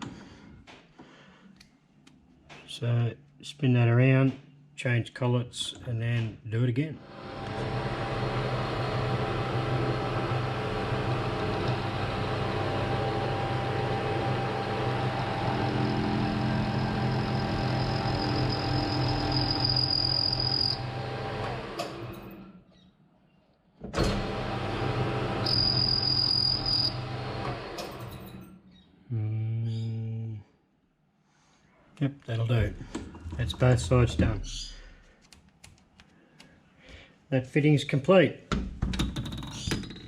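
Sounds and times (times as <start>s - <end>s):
metal lathe running: 7.1s - 22.0s.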